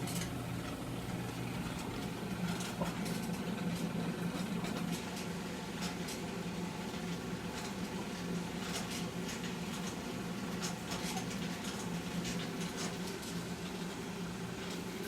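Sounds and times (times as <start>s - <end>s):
clothes dryer motor hum: 0.0s - 15.0s.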